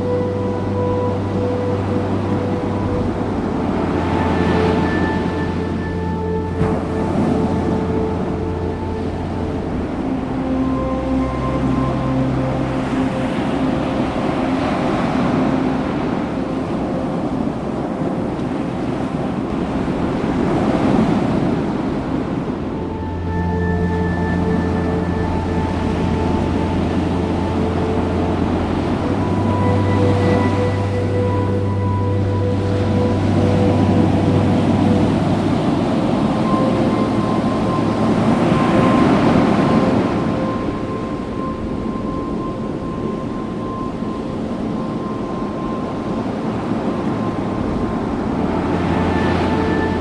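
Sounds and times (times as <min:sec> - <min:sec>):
background music sustained note: 0:00.0 - 0:50.0
ocean surf washing onto beach: 0:00.0 - 0:50.0
wind on microphone: 0:00.0 - 0:50.0.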